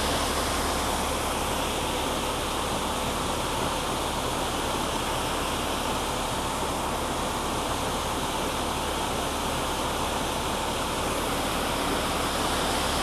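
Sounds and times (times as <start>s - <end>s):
combine harvester running: 0.0s - 13.0s.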